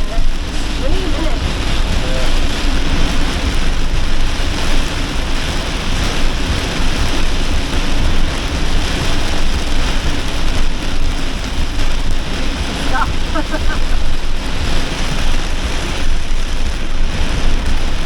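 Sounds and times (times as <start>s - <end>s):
heavy rain on a vehicle roof: 0.0s - 18.0s.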